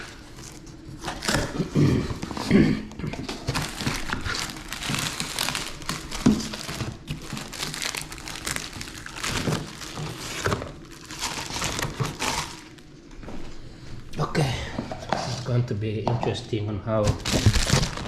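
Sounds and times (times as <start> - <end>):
packaging crinkling and rustling: 0.0 - 13.1, 17.0 - 18.0.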